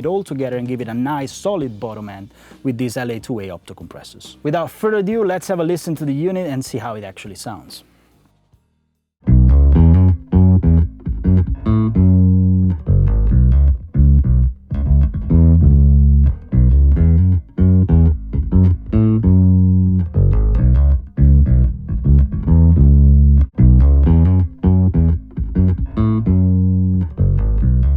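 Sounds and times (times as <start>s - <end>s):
electric bass riff: 9.2s - 27.9s.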